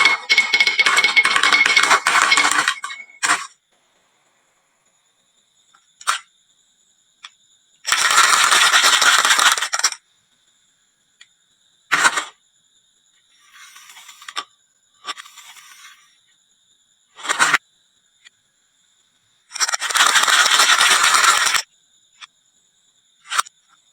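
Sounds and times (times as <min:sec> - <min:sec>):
marbles clattering on wood: 0:00.0 - 0:03.5.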